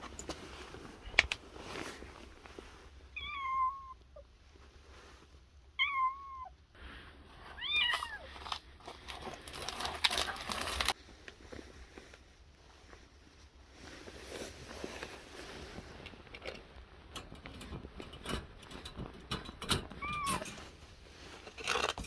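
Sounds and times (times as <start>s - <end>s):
rustling noise: 0.0s - 3.0s, 4.4s - 5.5s, 6.8s - 22.0s
cat meowing: 3.2s - 4.0s, 5.8s - 6.6s, 7.6s - 8.3s.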